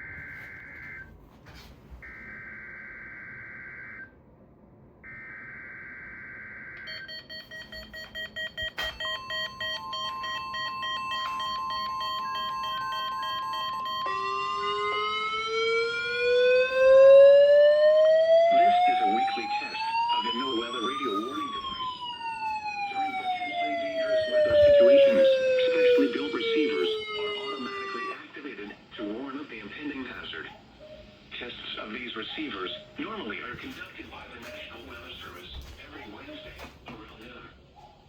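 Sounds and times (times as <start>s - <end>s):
steady alarm tone: 0.0s - 1.1s, 5.0s - 28.2s
siren with rising pitch: 5.1s - 28.2s
rapid pulsing beeps: 6.8s - 14.2s.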